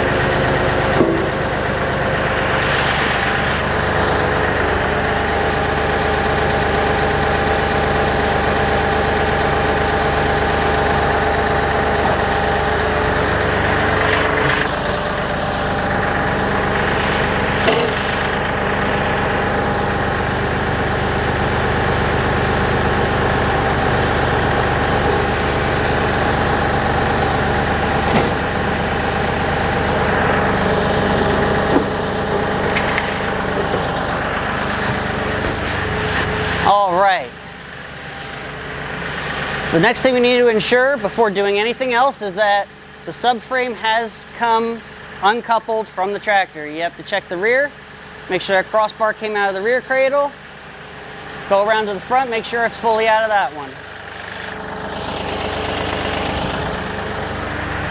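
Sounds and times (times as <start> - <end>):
tractor diesel engine running: 0.0 - 57.9
sharp knocks: 1.0 - 1.4.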